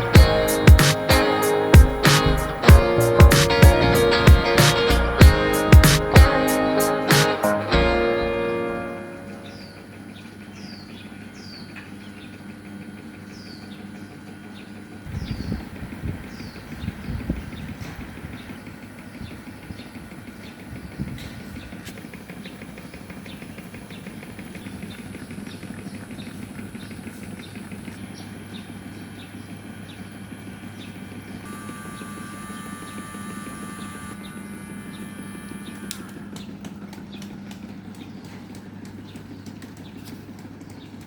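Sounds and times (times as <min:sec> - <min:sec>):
repeated ticking: 0:00.0 - 0:07.3
electric fan motor hum: 0:00.0 - 0:41.0.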